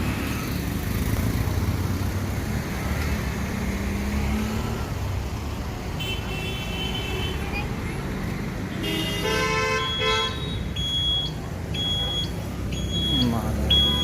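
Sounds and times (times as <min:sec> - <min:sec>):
road traffic rumble: 0:00.0 - 0:14.0
vehicle horn: 0:08.8 - 0:10.6.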